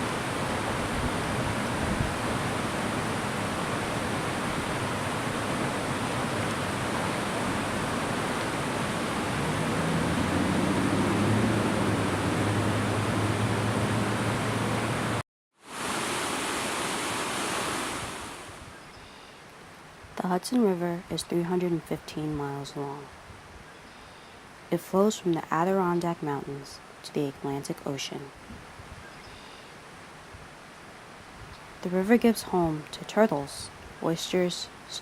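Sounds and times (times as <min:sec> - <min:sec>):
steady rushing noise: 0:00.0 - 0:15.2.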